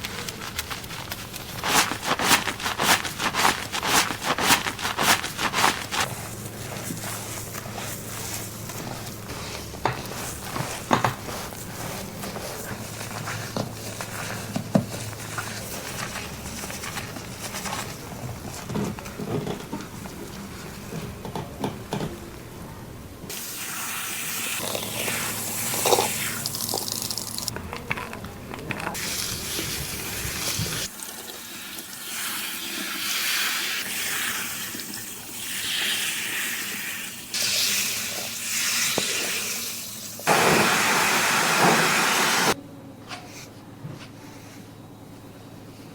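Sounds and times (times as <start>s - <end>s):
faint crackling and rubbing: 0.0s - 21.2s
shower head spraying water: 40.3s - 42.6s.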